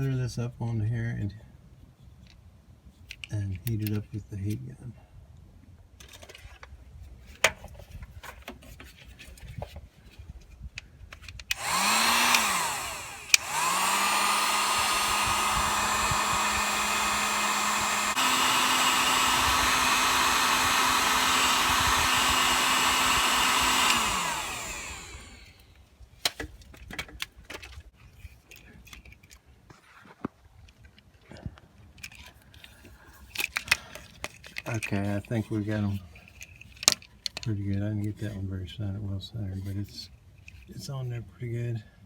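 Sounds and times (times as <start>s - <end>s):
heat gun fan whine: 11.3s - 25.8s.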